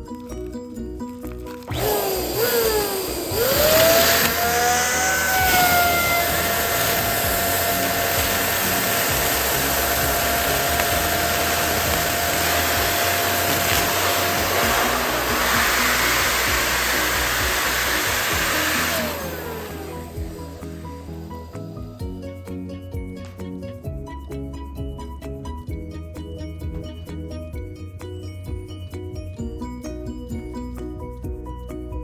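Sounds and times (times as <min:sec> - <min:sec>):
electric balloon pump blowing air: 0:01.5 - 0:22.1.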